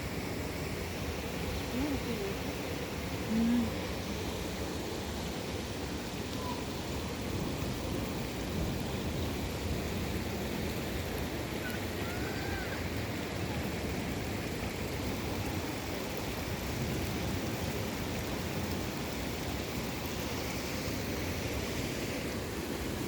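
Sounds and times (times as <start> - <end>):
rainwater rushing: 0.0 - 23.0.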